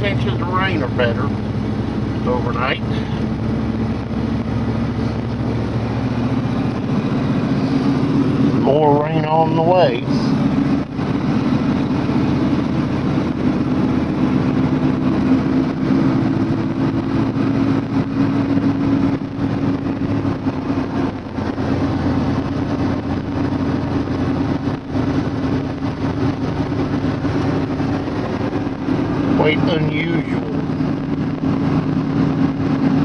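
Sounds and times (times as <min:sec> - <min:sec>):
vehicle engine idling: 0:00.0 - 0:33.0.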